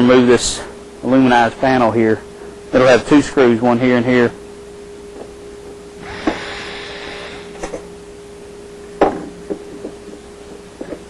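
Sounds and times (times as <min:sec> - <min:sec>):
faint steady hum: 0:00.0 - 0:11.0
tool scraping hiss: 0:06.0 - 0:07.8.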